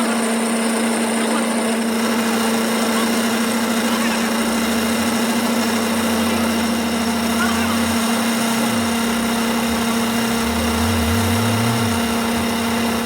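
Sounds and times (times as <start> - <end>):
noisy background: 0.0 - 13.0
workshop machine humming and whining: 0.0 - 13.0
lower hum: 4.4 - 13.0.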